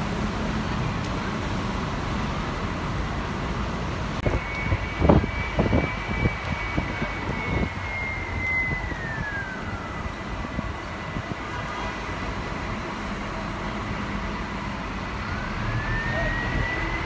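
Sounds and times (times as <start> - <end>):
bus engine and road noise: 0.0 - 17.0
thin high whine: 4.2 - 17.0.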